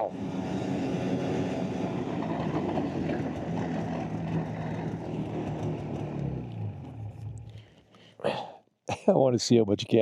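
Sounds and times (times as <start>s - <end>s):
snowmobile engine running: 0.1s - 7.6s.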